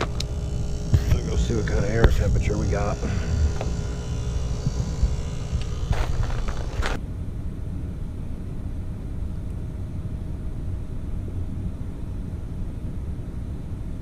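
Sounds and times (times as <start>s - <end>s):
higher hiss: 0.0s - 7.0s
heat pump low rumble: 0.0s - 14.0s.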